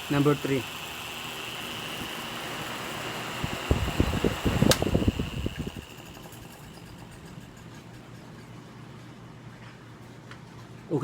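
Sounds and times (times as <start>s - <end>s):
stand fan whirring: 0.0s - 9.7s
sharp click: 4.6s - 5.0s.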